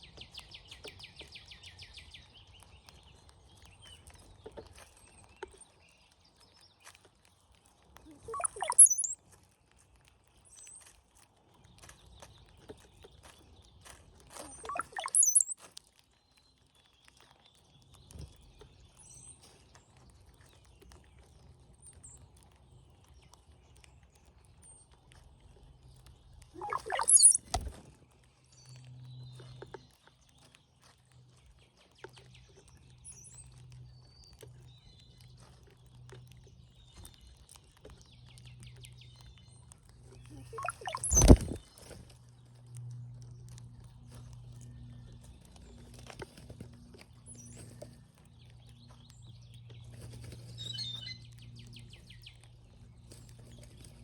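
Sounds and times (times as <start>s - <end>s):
high squeaky bird calls: 8.1s - 9.2s, 14.4s - 15.6s, 26.6s - 27.6s, 40.3s - 41.6s, 50.6s - 51.3s
bird gurgling song with whistle: 8.2s - 9.2s, 14.5s - 15.6s, 26.6s - 27.5s, 40.4s - 41.6s.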